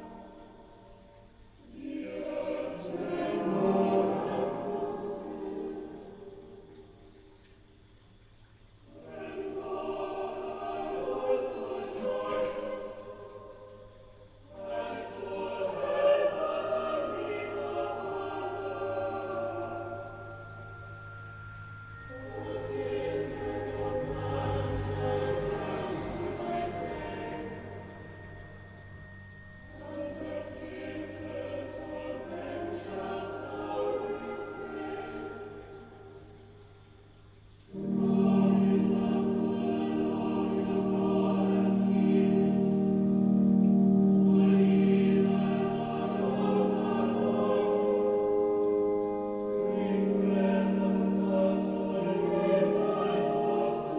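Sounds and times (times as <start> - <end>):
group chanting plainsong: 1.6 - 6.3, 8.9 - 36.2, 37.7 - 53.9.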